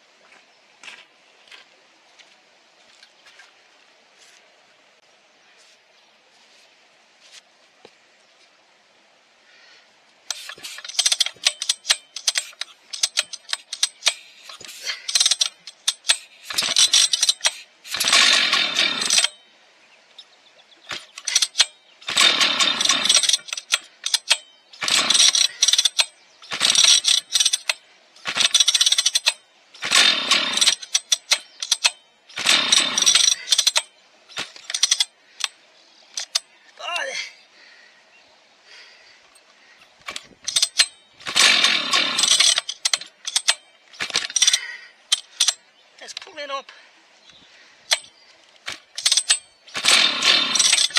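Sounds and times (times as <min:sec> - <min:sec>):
chainsaw recoil starter pulls: 0:10.3 - 0:19.4, 0:20.8 - 0:36.5, 0:39.3 - 0:46.8, 0:47.8 - 0:50.9.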